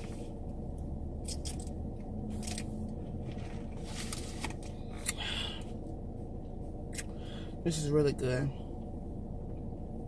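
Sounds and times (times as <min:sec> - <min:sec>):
steady low hum: 0:00.0 - 0:10.0.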